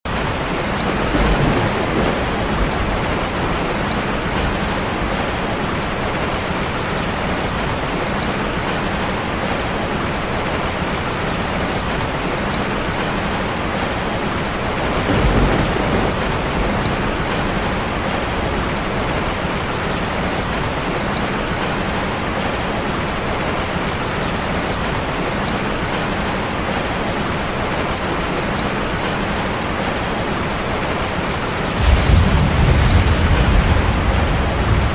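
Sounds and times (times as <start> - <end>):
heavy rain: 0.0 - 34.9
thunder rumbling: 0.1 - 6.4, 14.4 - 20.6, 31.7 - 34.9.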